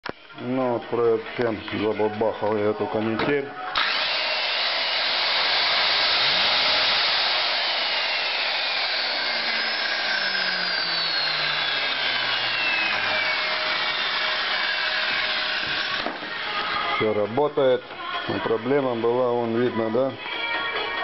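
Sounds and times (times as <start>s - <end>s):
angle grinder running: 3.8s - 16.9s.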